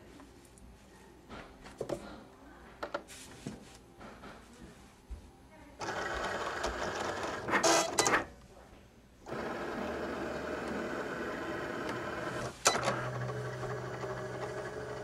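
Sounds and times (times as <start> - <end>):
cutting machine motors whirring: 5.8 - 8.2, 9.3 - 15.0.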